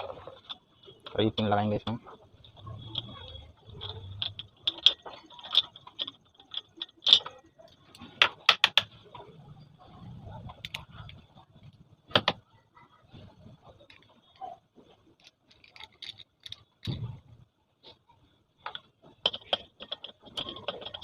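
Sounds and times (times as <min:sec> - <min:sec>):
metal clinks and clicks: 0:02.4 - 0:09.3, 0:15.2 - 0:17.1, 0:18.6 - 0:21.0.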